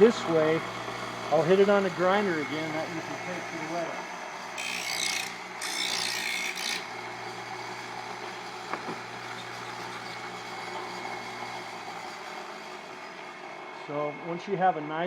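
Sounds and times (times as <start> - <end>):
bench grinder humming: 0.0 - 14.8.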